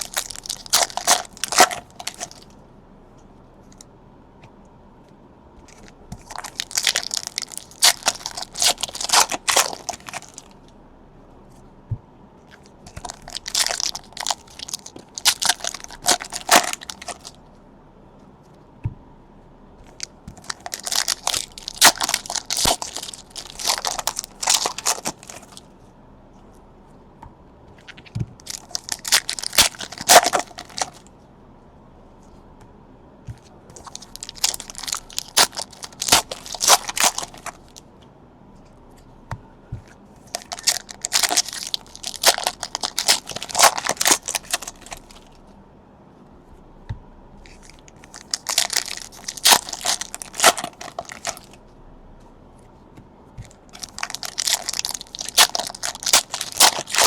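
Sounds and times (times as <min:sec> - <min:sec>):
card pack wrappers crinkling and tearing: 0:00.0 - 0:02.5, 0:05.6 - 0:10.6, 0:12.6 - 0:17.4, 0:19.9 - 0:25.7, 0:27.8 - 0:31.1, 0:33.7 - 0:37.8, 0:40.2 - 0:45.4, 0:47.4 - 0:51.6, 0:53.4 - 0:57.0.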